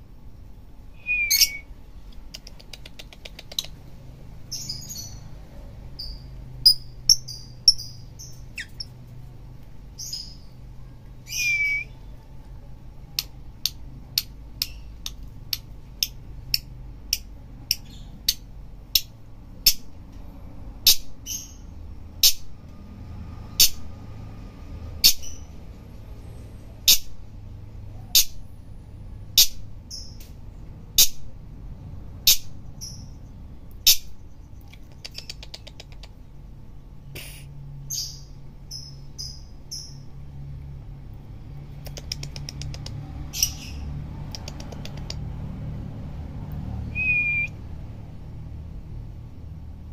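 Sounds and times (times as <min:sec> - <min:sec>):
lovebird chattering chirps: 0:01.0 - 0:01.7, 0:04.5 - 0:05.3, 0:06.0 - 0:09.0, 0:10.0 - 0:10.6, 0:32.2 - 0:36.1, 0:37.2 - 0:40.1, 0:41.8 - 0:45.2.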